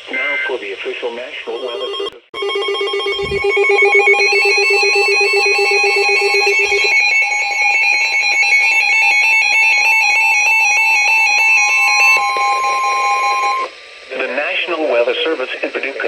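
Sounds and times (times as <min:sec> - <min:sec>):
emergency alert warbling tone: 0:01.5 - 0:13.7
low buzzing tone: 0:02.4 - 0:13.7.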